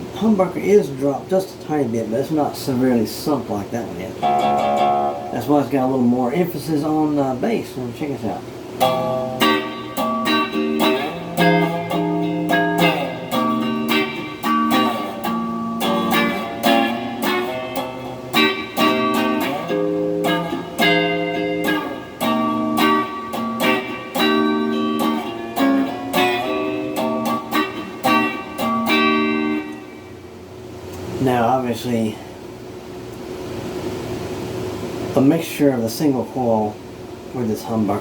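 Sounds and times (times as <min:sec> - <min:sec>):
clean electric guitar chords: 0:04.2 - 0:05.6, 0:08.8 - 0:30.2.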